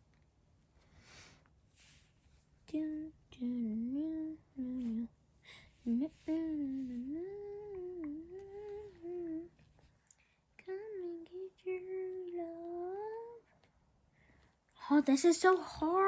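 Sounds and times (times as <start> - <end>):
girl humming a tune: 2.7 - 5.1, 5.8 - 9.6, 10.6 - 13.5.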